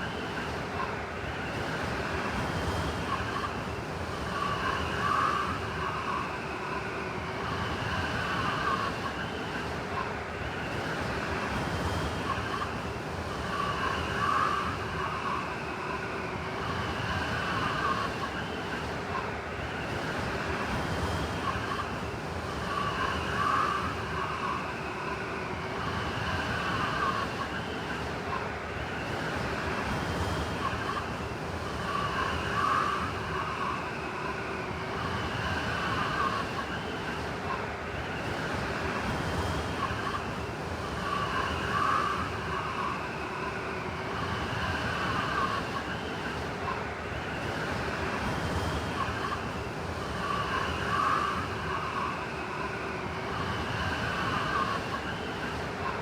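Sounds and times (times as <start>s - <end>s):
blizzard wind blowing: 30.6s - 56.0s
wavering wind whistle: 38.2s - 56.0s.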